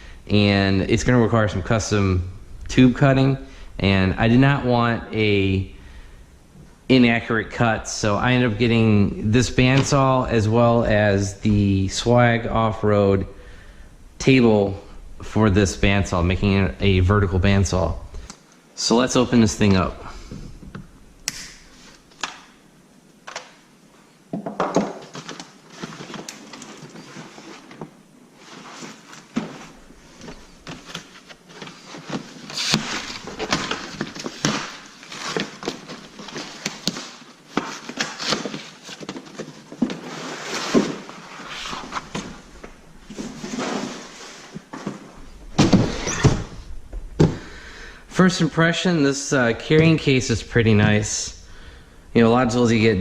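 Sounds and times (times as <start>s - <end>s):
cardboard packaging rustling: 24.9s - 46.1s
box thunks: 44.8s - 46.6s, 47.2s - 47.5s.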